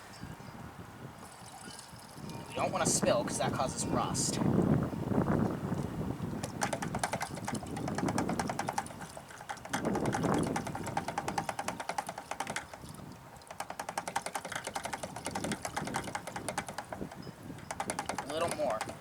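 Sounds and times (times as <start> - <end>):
gasoline glugging from can spout: 6.3 - 19.0.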